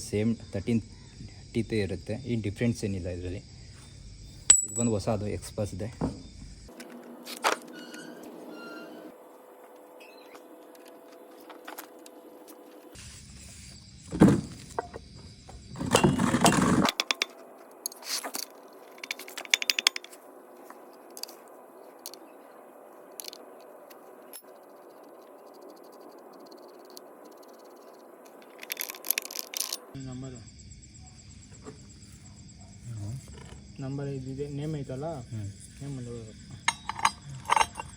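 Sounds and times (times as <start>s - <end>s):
metal chain clinking and rattling: 4.5s - 5.1s, 18.3s - 20.2s, 36.6s - 37.9s.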